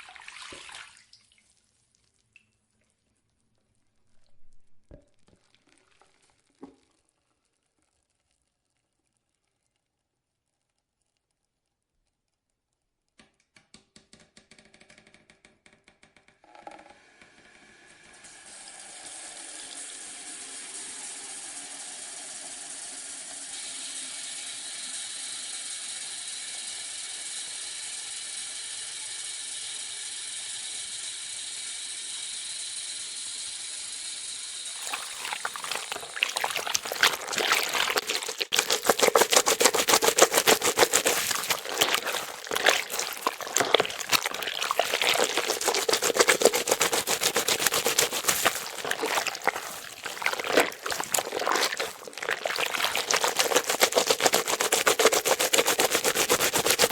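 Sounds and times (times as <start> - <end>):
faucet water running into basin: 34.7 - 56.9
water splashing against basin: 34.7 - 56.9.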